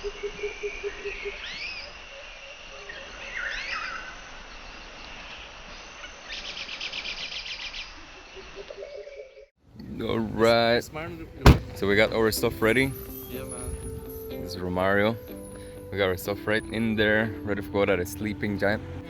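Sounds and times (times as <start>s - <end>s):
high insect drone: 0.1s - 8.6s
birds whistling and trilling: 3.3s - 4.1s.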